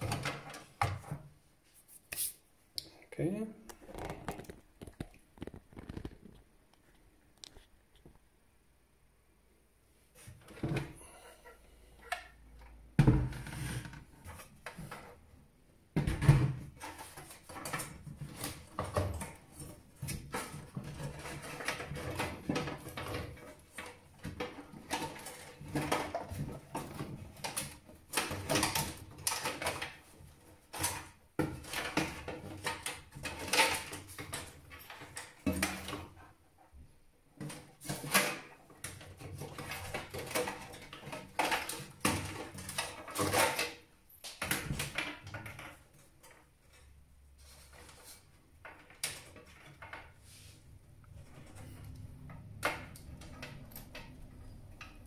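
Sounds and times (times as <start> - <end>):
clicks and knocks of hands working: 0.0 - 1.3, 10.3 - 15.3, 15.9 - 36.4, 37.3 - 50.2, 50.9 - 55.0.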